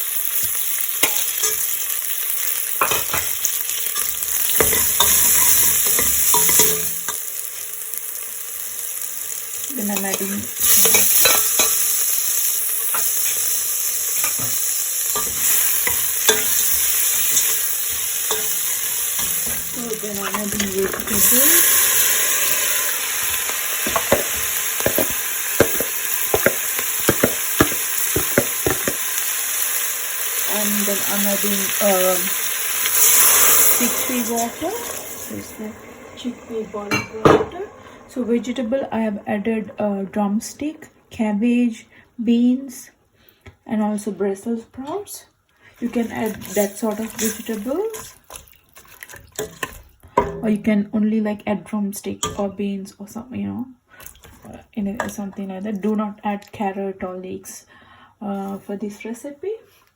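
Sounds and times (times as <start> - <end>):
food sizzling in hot oil: 0.0 - 41.8, 45.7 - 50.4
utensil stirring against pan: 0.2 - 7.7, 9.6 - 29.6, 30.3 - 39.6, 45.8 - 50.3
utensil scraping and knocking pan: 15.2 - 21.9.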